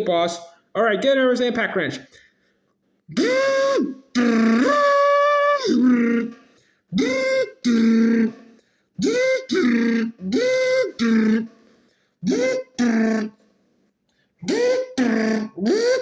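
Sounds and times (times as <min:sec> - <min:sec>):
person imitating impact wrench: 0:03.1 - 0:11.6, 0:12.2 - 0:13.4, 0:14.4 - 0:16.0.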